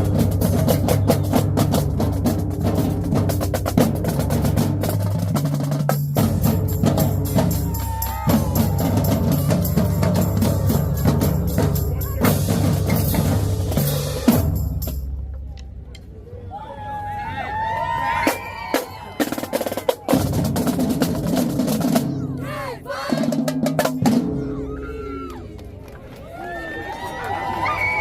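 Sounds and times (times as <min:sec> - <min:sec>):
bass drums: 0:00.0 - 0:15.8.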